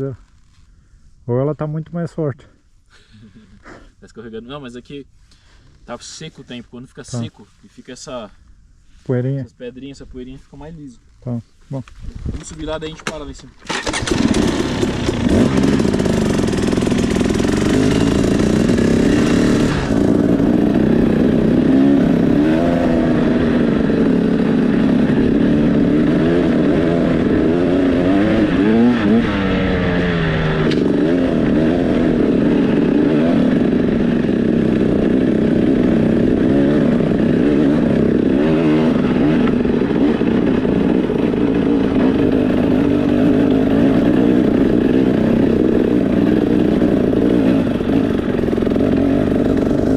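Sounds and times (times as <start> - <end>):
motorcycle engine revving: 13.7 - 49.9.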